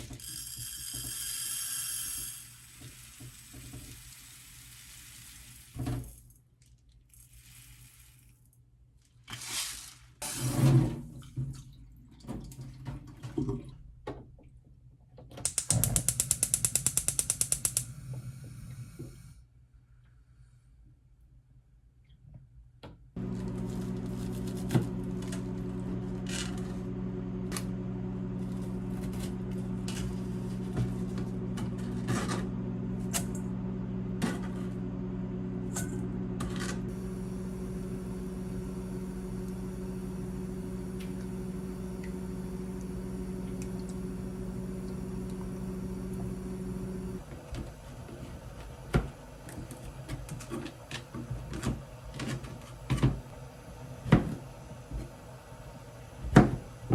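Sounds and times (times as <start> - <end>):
kitchen appliance motor humming: 23.2 - 56.9.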